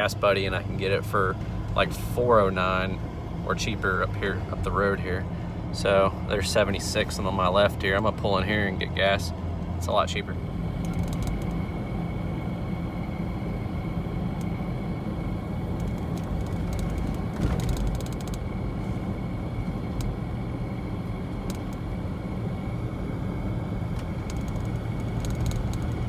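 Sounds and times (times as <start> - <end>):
car engine and road noise: 0.0 - 26.0
vehicle bump: 15.8 - 20.3, 23.8 - 26.0.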